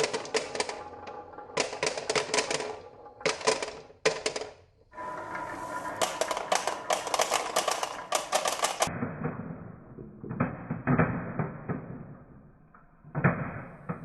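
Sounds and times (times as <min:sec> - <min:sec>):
marbles clattering along track: 0:00.0 - 0:08.9.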